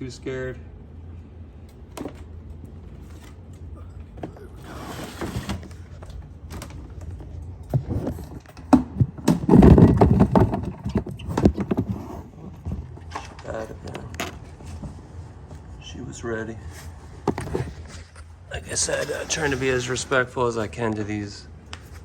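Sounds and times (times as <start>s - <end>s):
thumping and scuffling: 5.2s - 13.4s.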